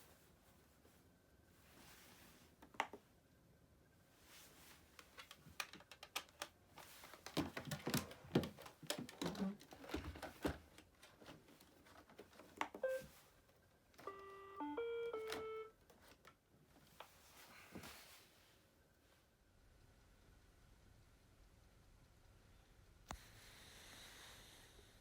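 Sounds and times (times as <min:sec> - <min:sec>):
plastic clicks and knocks: 0:07.2 - 0:12.8
short beep: 0:12.8 - 0:13.1, 0:14.1 - 0:15.7
electronic tune: 0:14.1 - 0:15.7.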